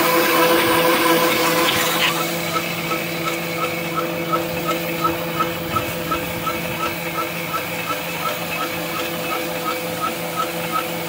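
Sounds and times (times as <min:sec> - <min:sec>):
machine motor hum: 0:00.0 - 0:11.0.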